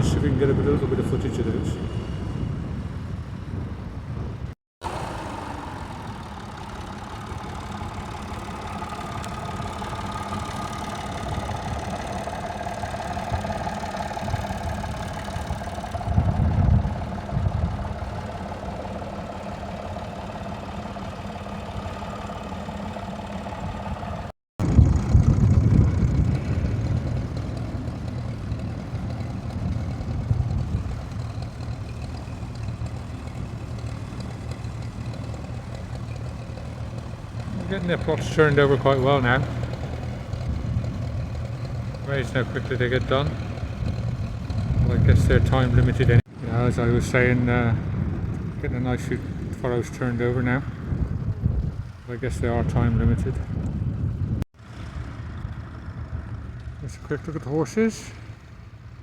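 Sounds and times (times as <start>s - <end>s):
tractor engines rumbling: 0.0s - 59.0s
faint wavering whine: 5.0s - 39.4s.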